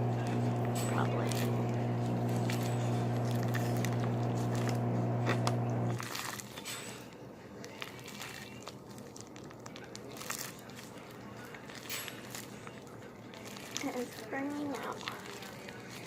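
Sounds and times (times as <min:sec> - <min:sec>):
microwave oven humming: 0:00.0 - 0:06.0.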